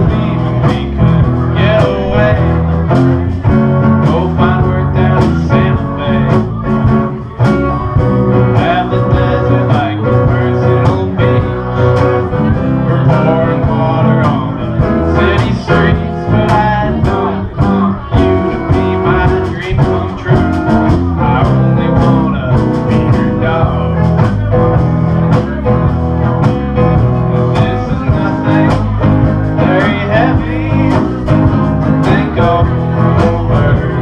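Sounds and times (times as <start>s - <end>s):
country song on guitar: 0.0s - 34.0s.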